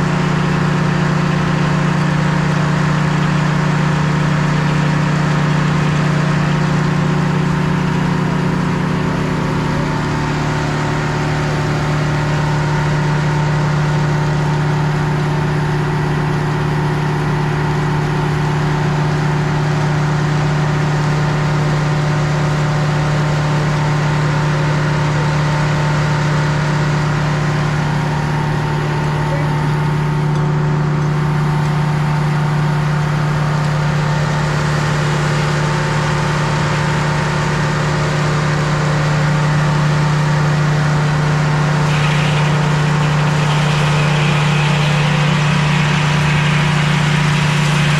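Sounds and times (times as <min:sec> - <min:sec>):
sawmill engine humming: 0:02.4 - 0:47.9
saw cutting through log: 0:06.6 - 0:25.3, 0:26.9 - 0:34.7, 0:40.3 - 0:47.9.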